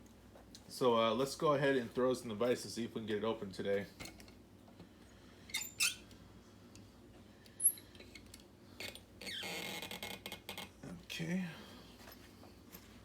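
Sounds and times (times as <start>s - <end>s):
brief high squeak: 5.5s - 6.0s.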